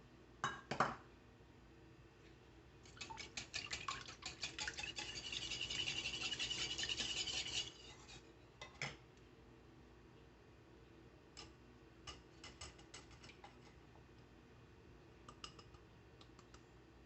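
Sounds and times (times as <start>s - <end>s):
utensil beating batter in bowl: 2.8s - 8.1s.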